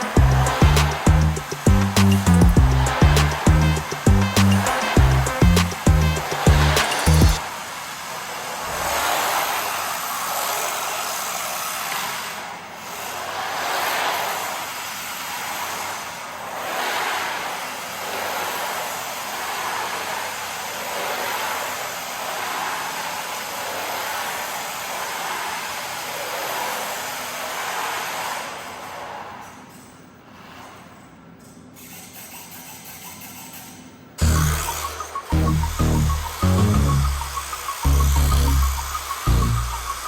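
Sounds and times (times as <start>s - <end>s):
rc car tyres rushing: 0.0s - 31.2s
rc car motor whirring: 31.8s - 40.0s.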